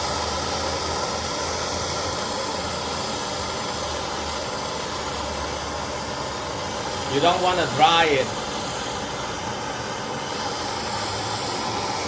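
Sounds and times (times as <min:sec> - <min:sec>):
gas torch flame hissing: 0:00.0 - 0:12.0.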